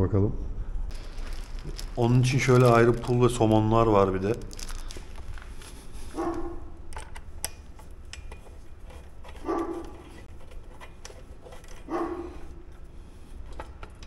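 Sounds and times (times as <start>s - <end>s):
dog barking: 6.2s - 6.7s, 9.4s - 10.0s, 11.9s - 12.4s.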